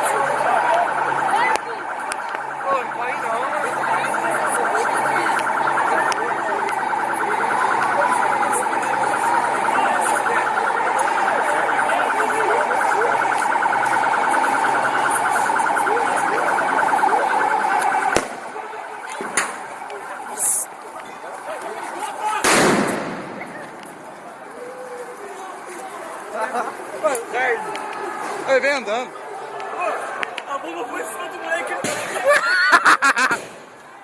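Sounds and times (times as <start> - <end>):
police siren warbling: 0.0 - 22.4.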